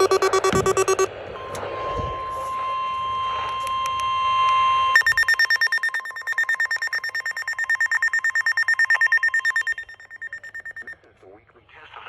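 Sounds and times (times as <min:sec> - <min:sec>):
rapid high-pitched beeping: 0:00.0 - 0:01.1, 0:05.0 - 0:11.0
steady alarm tone: 0:00.0 - 0:10.9.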